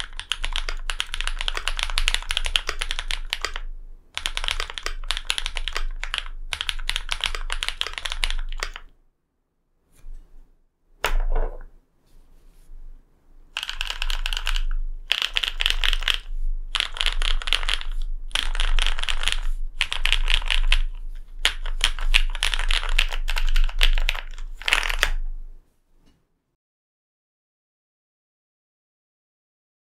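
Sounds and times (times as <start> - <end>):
mechanical keyboard clacking: 0.0 - 8.9, 13.6 - 25.2.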